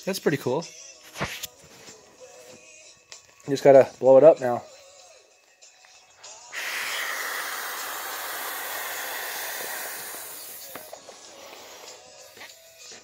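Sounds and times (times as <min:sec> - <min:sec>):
air hissing into inflatable: 0:06.4 - 0:12.4.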